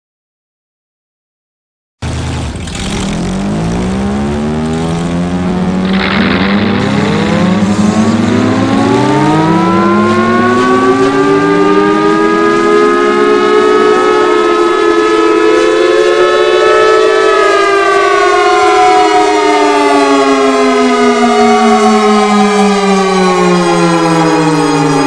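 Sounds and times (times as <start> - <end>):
engine rumbling: 2.0 - 16.5
siren winding up: 3.0 - 25.0.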